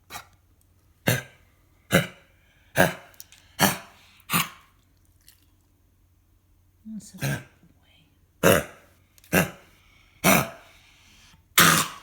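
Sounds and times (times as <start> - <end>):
dog coughing: 1.0 - 4.7, 8.4 - 10.7, 11.5 - 12.0.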